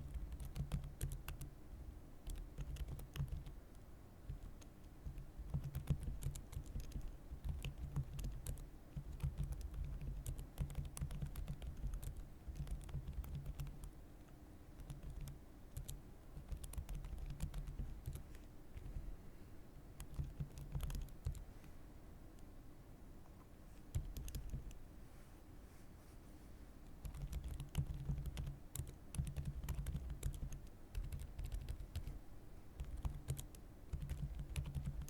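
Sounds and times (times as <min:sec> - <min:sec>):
keyboard typing: 0:00.0 - 0:01.5, 0:02.2 - 0:03.6, 0:04.3 - 0:13.9, 0:14.8 - 0:19.1, 0:20.0 - 0:21.5, 0:23.9 - 0:24.8, 0:27.0 - 0:32.2, 0:32.8 - 0:35.0.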